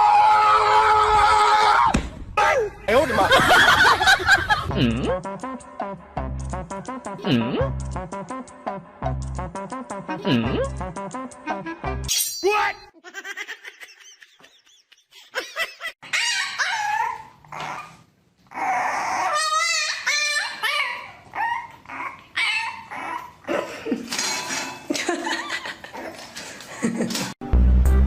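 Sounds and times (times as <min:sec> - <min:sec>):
pet animal whining cries: 0:16.0 - 0:23.5.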